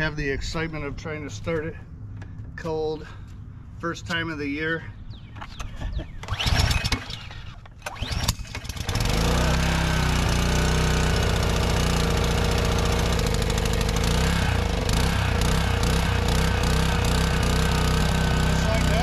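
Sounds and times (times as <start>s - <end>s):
recoil starter pulls: 5.5s - 19.0s
small engine running: 5.6s - 19.0s.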